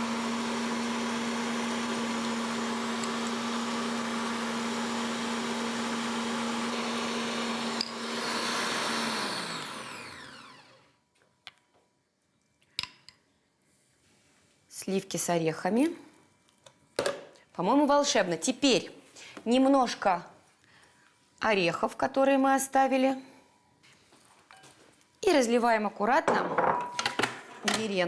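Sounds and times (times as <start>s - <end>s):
electric mixer whipping: 0.0s - 10.9s
mixer motor winding down: 0.0s - 10.9s.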